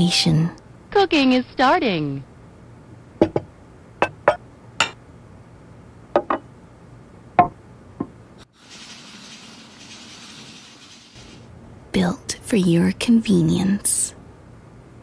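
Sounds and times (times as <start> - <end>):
kitchen objects knocking: 3.2 - 5.0.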